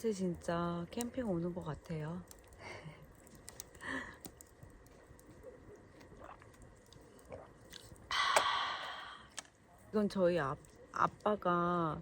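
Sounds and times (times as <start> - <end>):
person chewing food: 2.4 - 9.6
loud breathy exhale: 8.1 - 9.4.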